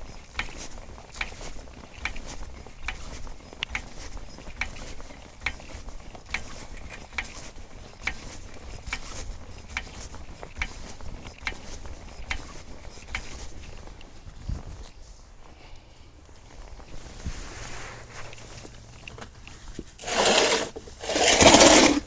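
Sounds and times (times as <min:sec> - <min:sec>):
hand-cranked metal mechanism clicking: 0:00.0 - 0:13.8, 0:20.0 - 0:22.0.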